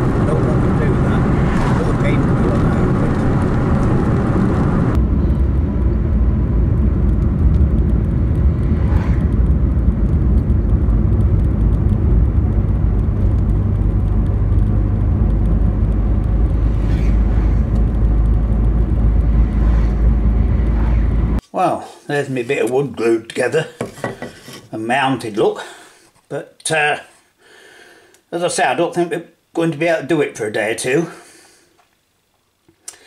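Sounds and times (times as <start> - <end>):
truck cab engine rumble: 0.0 - 21.4.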